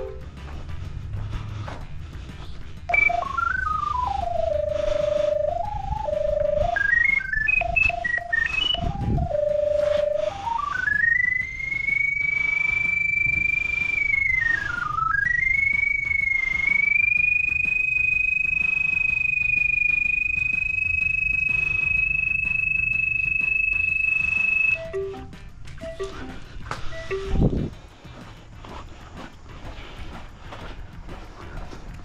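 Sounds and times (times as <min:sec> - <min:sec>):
electronic receiver tone: 0:02.9 - 0:27.5.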